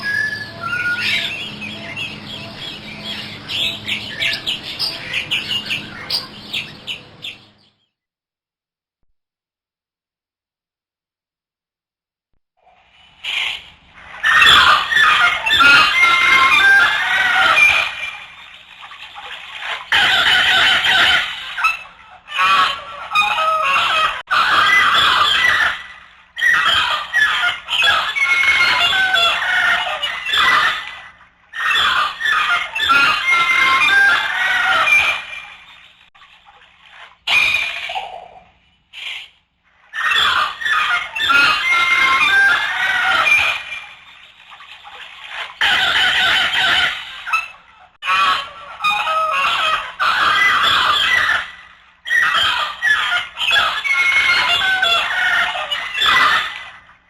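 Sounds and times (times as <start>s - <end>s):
birds squawking and clucking: 0.0s - 7.9s, 12.8s - 57.0s.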